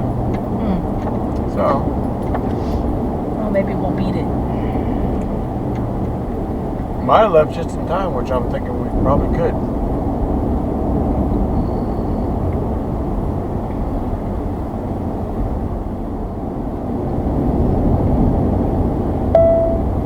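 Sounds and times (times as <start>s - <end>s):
road and engine rumble: 0.0s - 20.0s.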